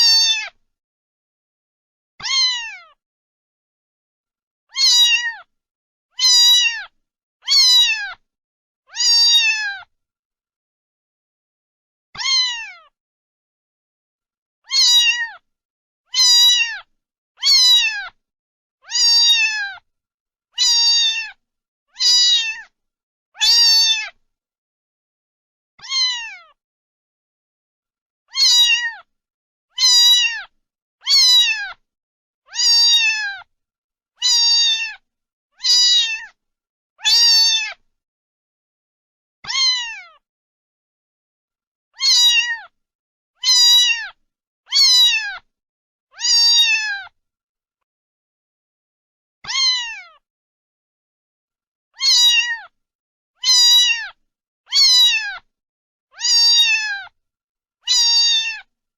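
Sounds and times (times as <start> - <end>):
cat meowing: 0.0 - 0.6, 2.2 - 3.0, 4.7 - 5.5, 6.2 - 8.2, 8.9 - 9.9, 12.2 - 13.0, 14.6 - 15.4, 16.1 - 18.2, 18.8 - 19.8, 20.6 - 21.4, 22.0 - 22.7, 23.4 - 24.2, 25.8 - 26.6, 28.3 - 29.1, 29.7 - 31.8, 32.5 - 33.5, 34.2 - 35.0, 35.6 - 36.4, 37.0 - 37.8, 39.4 - 40.2, 42.0 - 42.8, 43.4 - 45.5, 46.1 - 47.2, 49.4 - 50.2, 52.0 - 52.8, 53.4 - 55.5, 56.1 - 57.1, 57.9 - 58.7.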